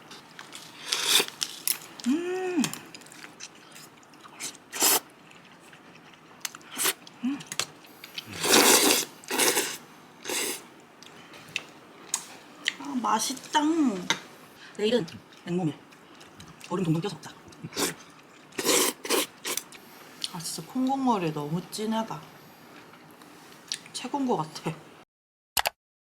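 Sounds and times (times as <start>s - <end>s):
chewing: 0.1s - 12.9s, 15.0s - 20.4s
noodle slurping: 0.7s - 1.4s, 4.4s - 5.1s, 8.0s - 10.7s, 17.8s - 19.7s
person humming: 2.0s - 2.9s.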